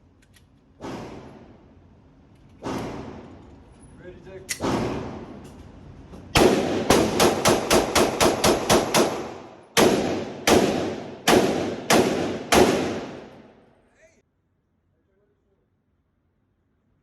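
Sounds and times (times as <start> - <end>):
pistol shots echoing: 6.4 - 13.6.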